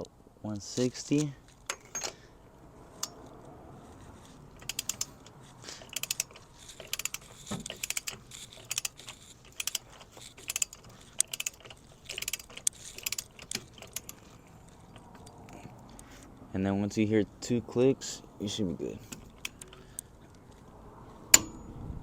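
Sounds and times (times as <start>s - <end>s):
torque wrench ratcheting clicks: 4.6s - 14.3s.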